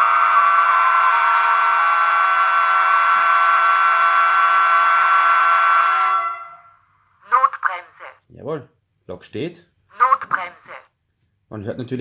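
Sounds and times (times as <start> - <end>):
two-tone locomotive horn: 0.0 - 6.8.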